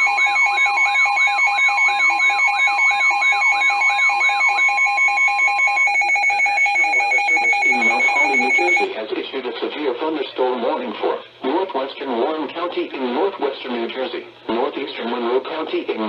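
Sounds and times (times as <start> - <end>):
fast pulsing beeps: 0.0 - 8.9
siren sweeping downward: 0.0 - 8.9
steady alert tone: 5.7 - 8.9.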